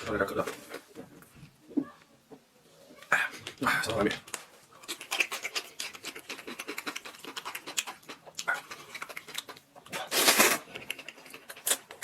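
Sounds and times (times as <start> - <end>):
wet chewing and smacking: 3.4 - 12.0.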